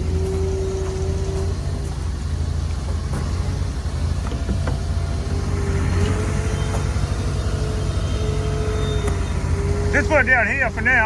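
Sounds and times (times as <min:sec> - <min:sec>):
heavy machinery engine running: 0:00.0 - 0:11.0.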